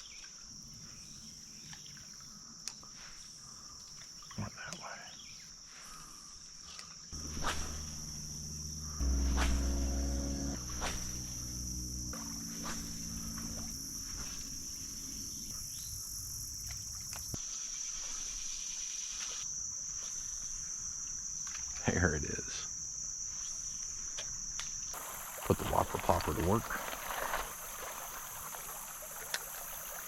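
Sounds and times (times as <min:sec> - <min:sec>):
crickets and insects chirring: 0:00.0 - 0:30.0
low rumble: 0:07.2 - 0:16.1.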